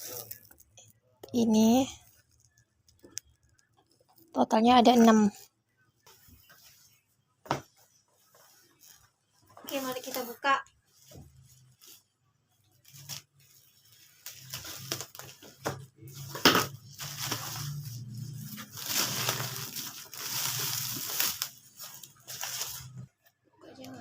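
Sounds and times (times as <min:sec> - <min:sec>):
cardboard packaging crinkling: 0:00.0 - 0:00.8, 0:12.7 - 0:23.1.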